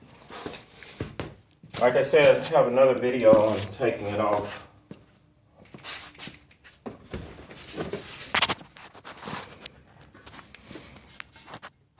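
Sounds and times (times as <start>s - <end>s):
knocks and rustles of handling: 0.0s - 11.9s.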